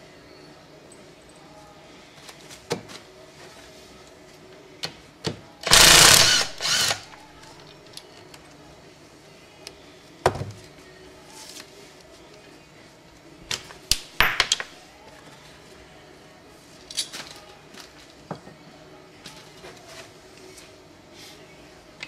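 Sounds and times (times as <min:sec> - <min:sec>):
power tool burst: 0:05.6 - 0:07.1.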